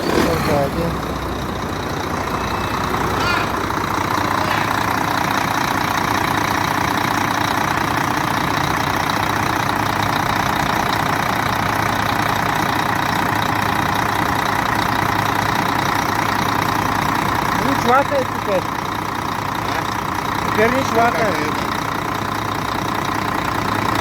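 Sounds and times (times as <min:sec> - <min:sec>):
diesel truck engine idling: 0:00.0 - 0:24.0.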